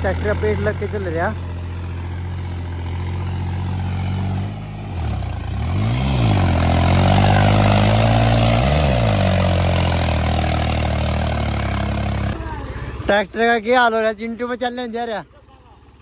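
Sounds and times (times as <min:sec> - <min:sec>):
tractor engine working under load: 0:00.0 - 0:16.0.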